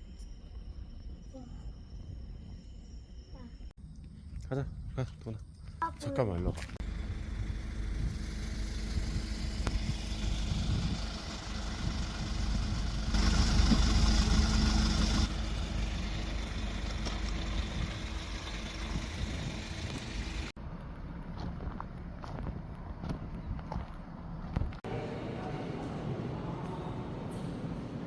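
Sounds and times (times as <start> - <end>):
vehicle engine and road rumble: 6.1 - 28.0.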